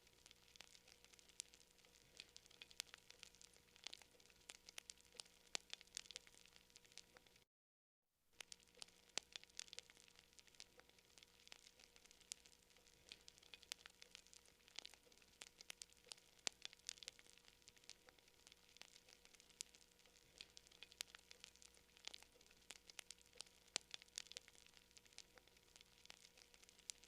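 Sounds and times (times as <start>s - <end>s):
campfire crackling and popping: 0.0s - 7.4s, 8.4s - 27.0s
faint hiss: 0.0s - 7.4s.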